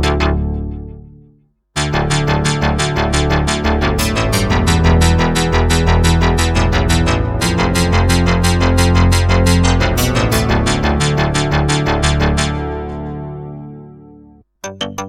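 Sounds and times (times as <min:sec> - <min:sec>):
sustained synth bass: 0:00.0 - 0:01.2, 0:01.8 - 0:14.1
fast repeating bright synth notes: 0:01.8 - 0:12.7
synthesizer patch: 0:01.8 - 0:13.8.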